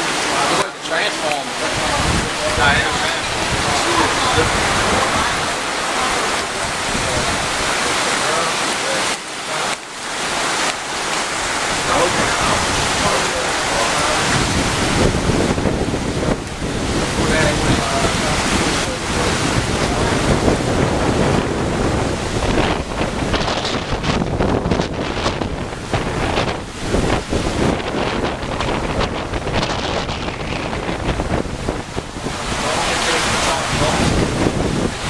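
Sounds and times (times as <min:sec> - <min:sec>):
wind buffeting microphone: 0:00.0 - 0:09.1, 0:09.7 - 0:35.0
strong wind rushing: 0:00.0 - 0:35.0.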